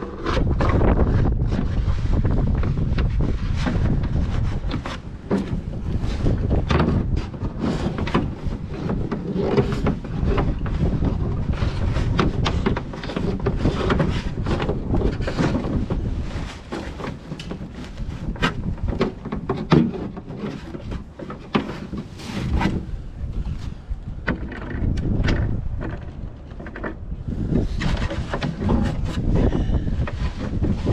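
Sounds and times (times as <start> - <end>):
wind buffeting microphone: 0.0 - 30.9.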